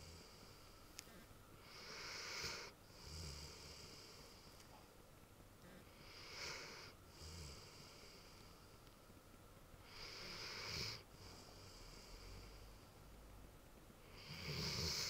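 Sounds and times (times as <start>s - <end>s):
dog snoring: 0.0s - 4.5s, 5.6s - 8.6s, 9.8s - 12.8s, 14.0s - 15.0s
soft breathing: 0.0s - 4.9s, 5.6s - 9.2s, 9.8s - 13.2s.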